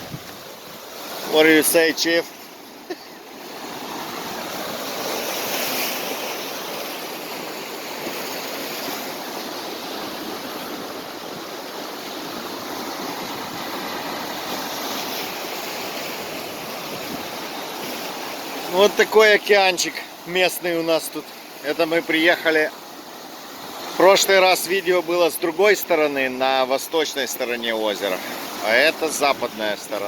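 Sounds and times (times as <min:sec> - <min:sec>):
waves breaking on shore: 0:00.0 - 0:30.0.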